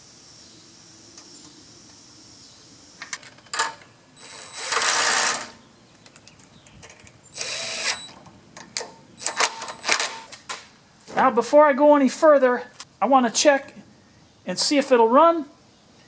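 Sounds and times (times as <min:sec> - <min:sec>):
cordless driver spinning: 0:07.4 - 0:08.1.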